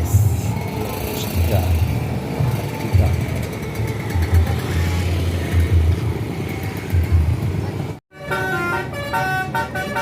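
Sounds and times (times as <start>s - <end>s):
diesel bus engine rumbling: 0.0s - 10.0s
multi-tone bus horn: 8.1s - 10.0s.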